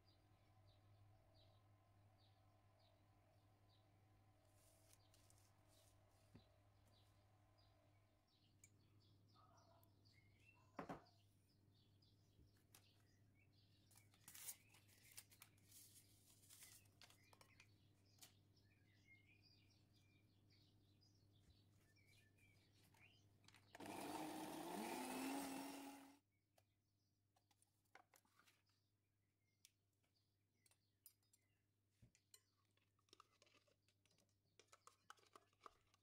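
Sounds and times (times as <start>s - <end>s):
electric mixer whining: 23.8s - 26.2s.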